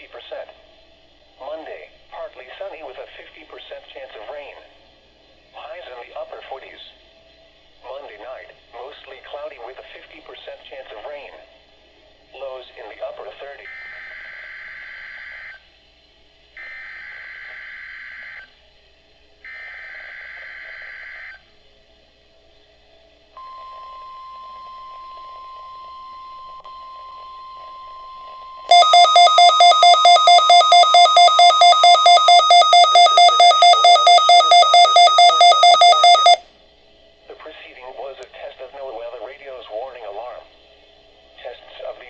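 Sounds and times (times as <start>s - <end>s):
steady single tone: 23.4s - 36.4s
radio alarm beeping rapidly: 26.9s - 36.4s
warbling data screech: 27.4s - 36.4s.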